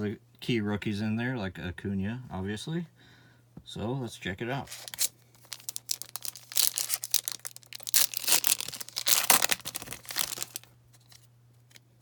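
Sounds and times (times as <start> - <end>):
card pack wrapper tearing and crinkling: 4.7 - 11.3.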